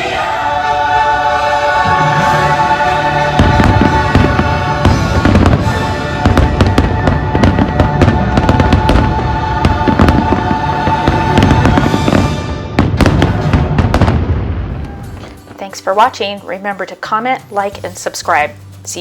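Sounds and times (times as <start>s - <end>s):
music soundtrack: 0.0s - 19.0s
fireworks bursting and crackling: 3.3s - 16.4s
sharp loud firework cracks: 3.4s - 15.6s.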